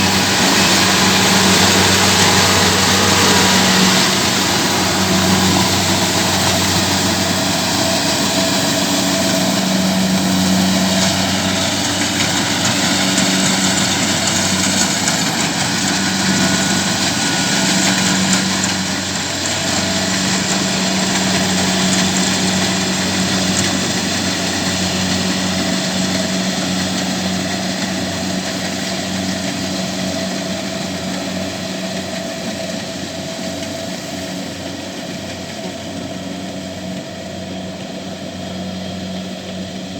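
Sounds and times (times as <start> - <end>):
threshing machinery whirring and rattling: 0.0 - 37.6
diesel engine running under load: 0.0 - 39.9.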